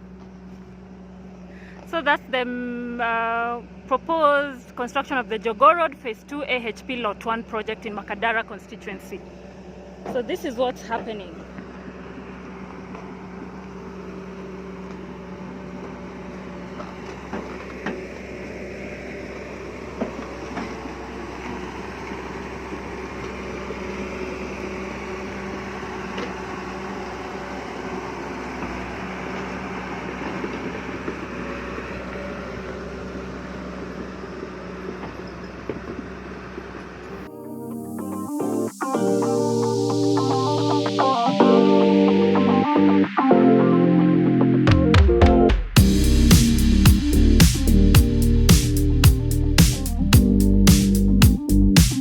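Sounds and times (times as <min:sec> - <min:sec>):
engine running steadily: 0:00.0 - 0:37.3, 0:45.5 - 0:52.0.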